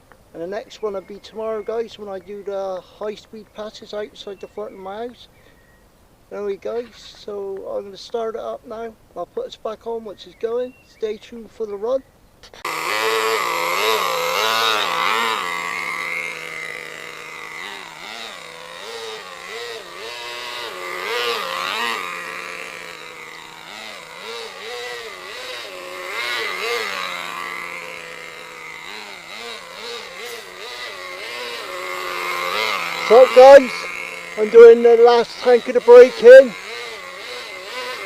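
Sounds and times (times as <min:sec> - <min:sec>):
nitro engine revving: 0:12.6 - 0:38.0.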